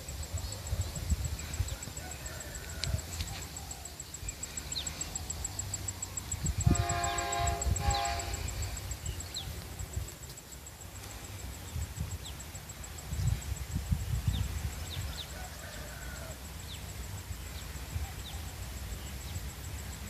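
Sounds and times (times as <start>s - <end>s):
train horn: 6.6s - 8.8s.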